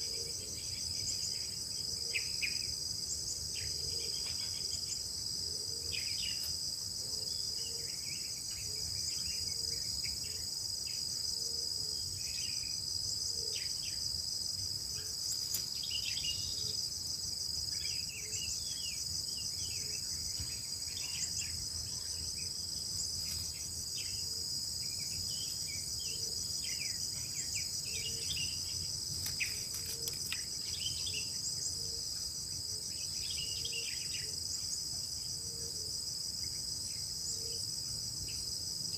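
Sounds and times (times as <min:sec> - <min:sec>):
insect chorus trilling: 0:00.0 - 0:38.9.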